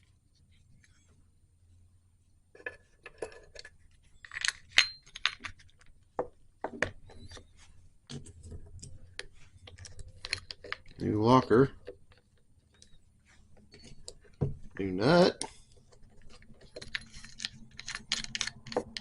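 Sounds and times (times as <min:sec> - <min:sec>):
metal parts and tools clinking: 0:02.6 - 0:06.0, 0:08.1 - 0:13.0, 0:13.6 - 0:19.0.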